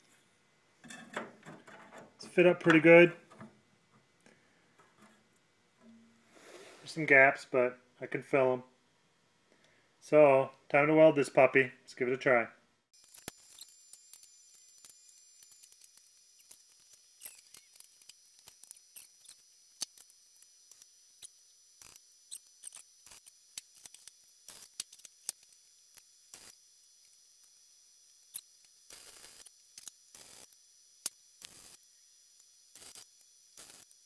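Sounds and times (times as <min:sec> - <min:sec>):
welding ticks and crackles: 0:12.9 - 0:34.0.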